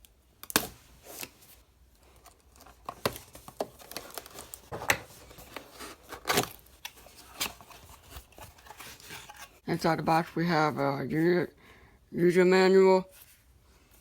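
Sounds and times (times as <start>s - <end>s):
cardboard packaging rustling: 0.7s - 10.8s.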